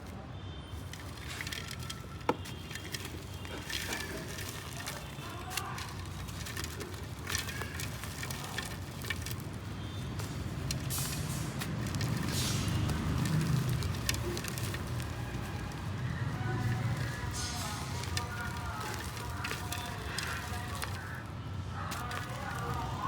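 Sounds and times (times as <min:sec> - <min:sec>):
dry clay mud crumbling: 0:00.0 - 0:23.0.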